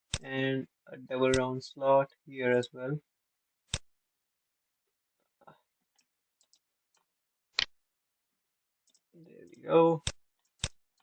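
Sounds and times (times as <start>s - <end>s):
computer mouse clicking: 6.0s - 7.7s, 8.8s - 11.0s.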